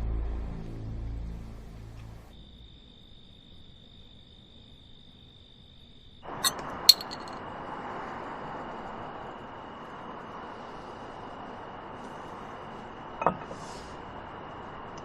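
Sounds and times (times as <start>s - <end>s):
hissing outdoor ambience: 1.2s - 15.0s
cricket trill: 2.3s - 11.8s, 14.0s - 15.0s
sharp metallic clinks: 6.4s - 7.4s.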